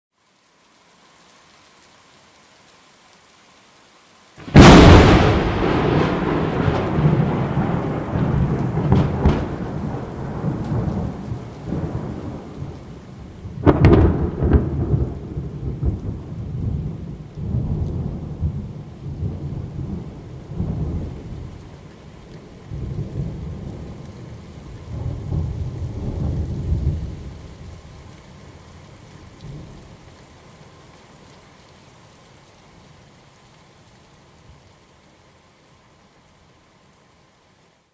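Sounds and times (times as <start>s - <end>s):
steady rain: 0.1s - 37.9s
thunder: 4.4s - 12.8s, 13.5s - 21.2s.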